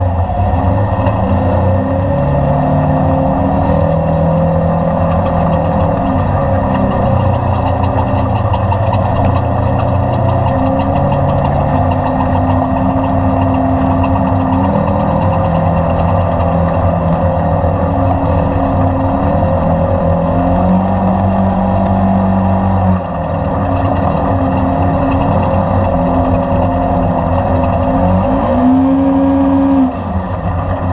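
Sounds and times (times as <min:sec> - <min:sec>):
loud engine running: 0:00.0 - 0:30.9.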